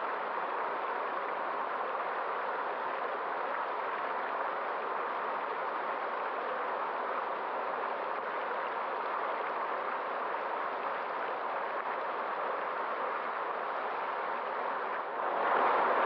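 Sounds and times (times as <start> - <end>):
stream water rushing: 0.0 - 16.0.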